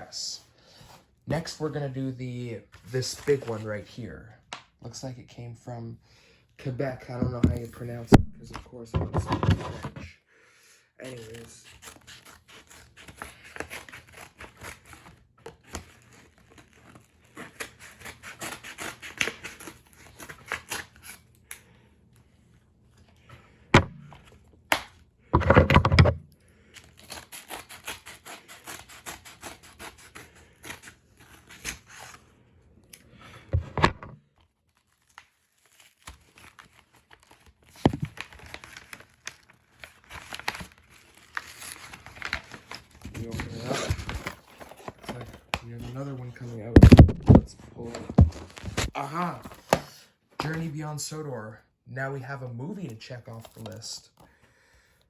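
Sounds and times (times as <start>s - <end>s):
package knocking: 7.2s - 10.0s, 23.8s - 26.2s, 46.8s - 47.5s, 48.1s - 48.9s
packaging tearing and crinkling: 11.0s - 21.7s, 26.7s - 32.2s, 34.3s - 47.4s, 48.2s - 49.5s.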